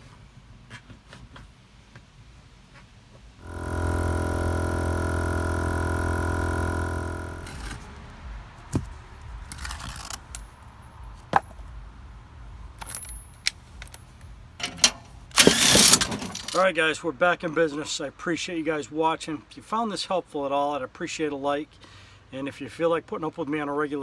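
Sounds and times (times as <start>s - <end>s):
mechanical hum: 1.5s - 16.8s.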